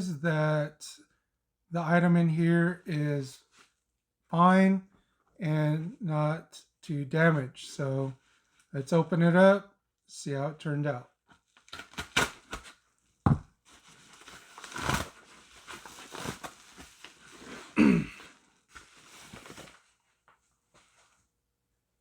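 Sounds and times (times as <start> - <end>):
envelope tearing: 11.6 - 12.8, 13.7 - 17.8
packaging rustling and crinkling: 13.6 - 21.1.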